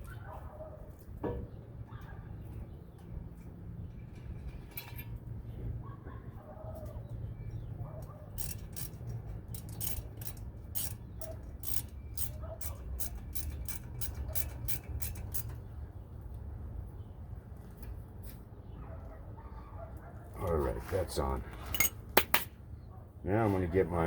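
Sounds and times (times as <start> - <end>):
sharp metallic clicks of hand tool: 8.4 - 15.6, 21.8 - 22.5.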